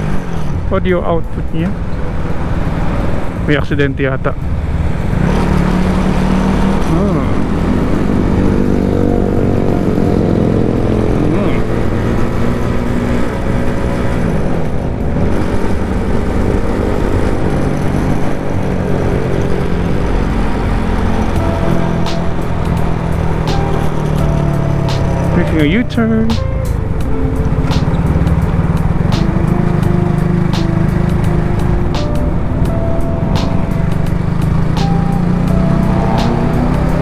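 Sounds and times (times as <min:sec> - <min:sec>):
motorcycle engine running: 0:00.0 - 0:37.0
road and wind noise: 0:00.0 - 0:37.0.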